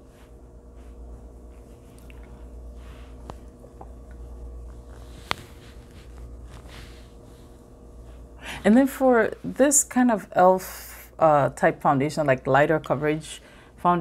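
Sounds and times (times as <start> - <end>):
makeup brush dabbing on skin: 0.0 - 9.7
low steady hum: 0.0 - 14.0.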